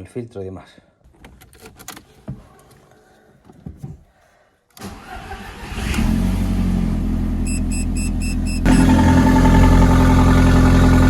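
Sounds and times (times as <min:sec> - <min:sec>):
car engine cranking and idling: 0:04.8 - 0:11.0
short electronic beeps: 0:07.5 - 0:08.9.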